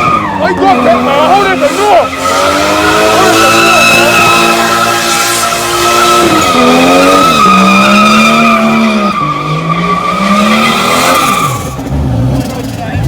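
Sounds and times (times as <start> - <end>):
tyres squealing: 0.0 - 11.9
car engine revving: 0.0 - 13.0.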